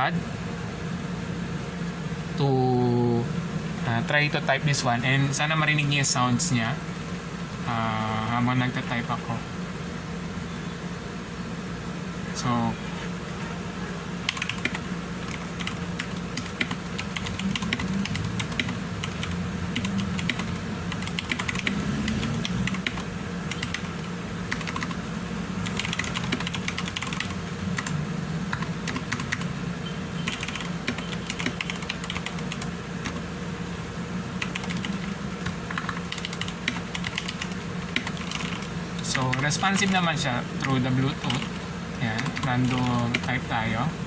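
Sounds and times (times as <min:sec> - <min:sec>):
mechanical keyboard typing: 0:14.3 - 0:29.6, 0:30.2 - 0:33.3, 0:34.4 - 0:43.5.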